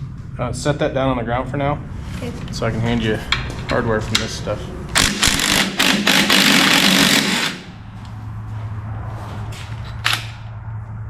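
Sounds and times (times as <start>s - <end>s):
low steady hum: 0.0s - 11.0s
impact wrench hammering: 5.0s - 7.8s.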